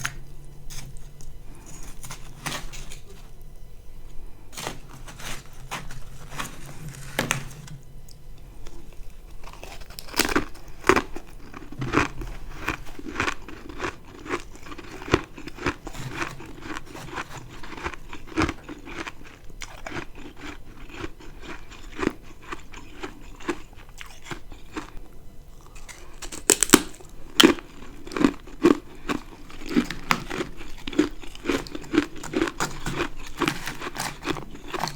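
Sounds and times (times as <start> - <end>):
chewing ice crunches: 0.0 - 3.5, 4.5 - 34.9.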